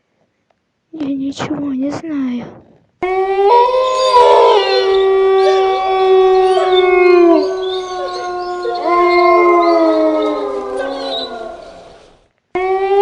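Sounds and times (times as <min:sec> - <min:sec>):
dogs howling: 0:03.0 - 0:13.0.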